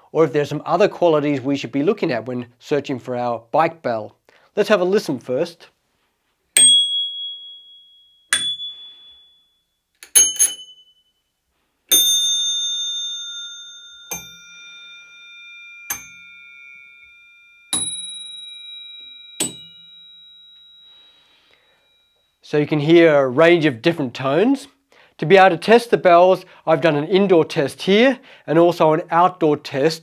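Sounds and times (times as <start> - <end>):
bicycle bells ringing: 6.6 - 11.2, 11.9 - 22.2.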